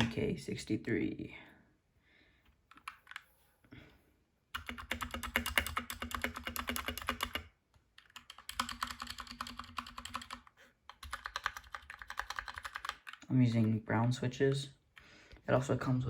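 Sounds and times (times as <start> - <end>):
mechanical keyboard typing: 2.7 - 3.3, 4.6 - 13.9.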